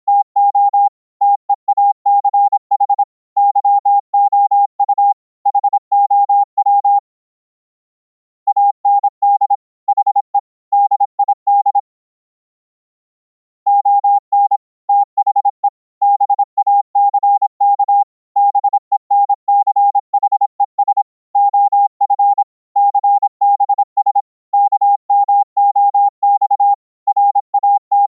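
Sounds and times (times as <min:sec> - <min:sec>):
morse code beeps: 0:00.1 - 0:07.0, 0:08.5 - 0:11.8, 0:13.7 - 0:28.0.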